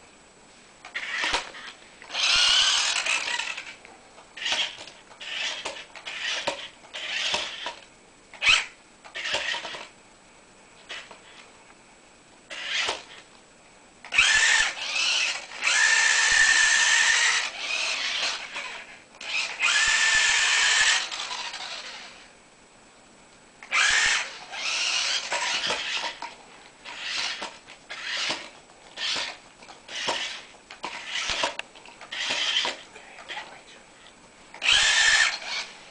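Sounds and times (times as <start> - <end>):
toy car motor whirring: 0.9 - 3.8, 4.4 - 7.8, 8.4 - 9.9, 10.9 - 11.2, 12.5 - 13.2, 14.1 - 22.3, 23.7 - 32.8, 34.6 - 35.8.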